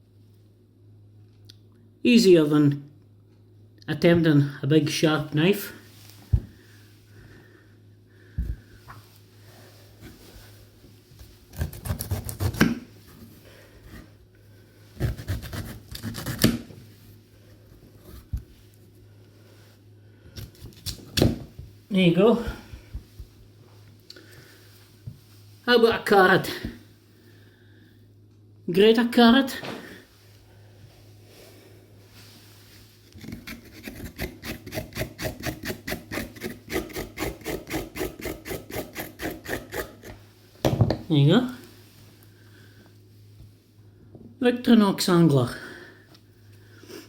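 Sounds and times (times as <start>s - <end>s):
knife scraping vegetable: 11.5s - 13.2s, 15.0s - 16.7s, 33.1s - 40.2s
carrot grating rasping strokes: 11.6s - 12.8s, 15.0s - 16.6s, 33.1s - 40.2s.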